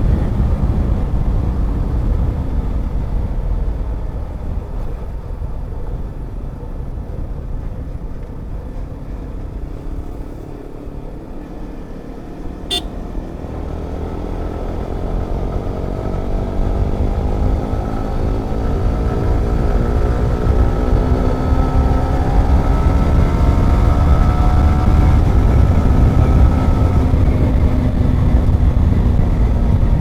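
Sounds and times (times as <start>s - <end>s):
motorcycle engine rumbling: 7.1s - 22.8s
horn beep: 12.7s - 13.0s.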